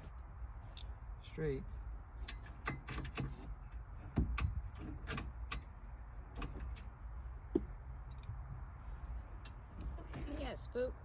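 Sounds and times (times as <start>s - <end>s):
metallic clicks of bolts and tools: 8.0s - 8.4s.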